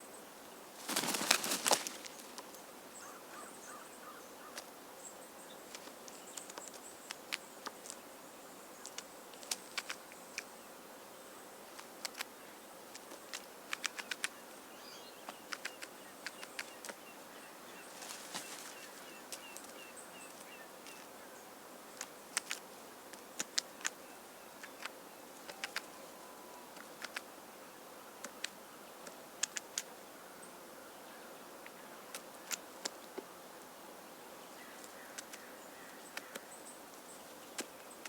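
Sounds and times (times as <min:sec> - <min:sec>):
bird wings fluttering: 0:00.8 - 0:02.6, 0:17.8 - 0:21.0
sharp clicks: 0:11.8 - 0:12.3, 0:23.4 - 0:24.0, 0:26.8 - 0:27.3, 0:28.2 - 0:29.9.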